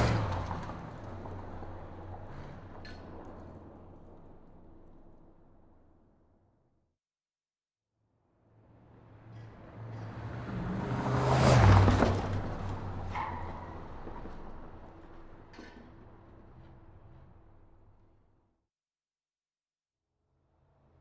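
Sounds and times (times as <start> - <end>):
vehicle passing by: 0.0 - 5.0, 8.8 - 17.4.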